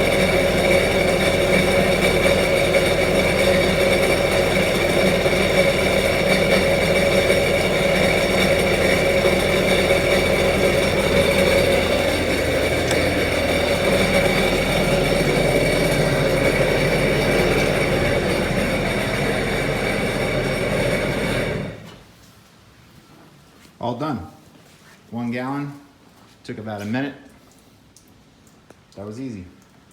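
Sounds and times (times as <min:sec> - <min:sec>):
jetski engine idling: 0:00.0 - 0:22.0.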